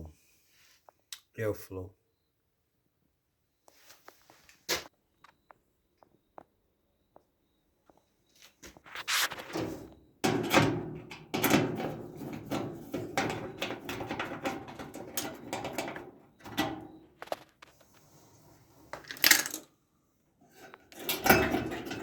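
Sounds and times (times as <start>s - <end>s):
sheet metal knocking and scraping: 9.4s - 17.4s, 20.5s - 22.0s.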